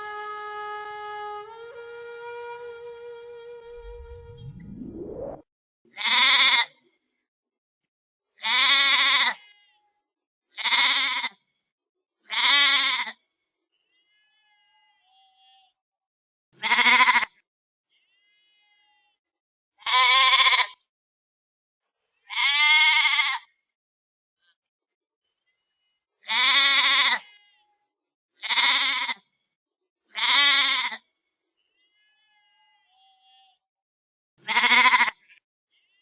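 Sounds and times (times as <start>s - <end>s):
sheep bleating: 6.0s - 6.7s, 8.4s - 9.9s, 10.6s - 11.4s, 12.3s - 13.2s, 13.9s - 15.8s, 16.6s - 19.2s, 19.8s - 20.8s, 22.3s - 23.5s, 26.2s - 27.7s, 28.4s - 29.2s, 30.1s - 31.0s, 31.7s - 33.6s, 34.4s - 36.0s.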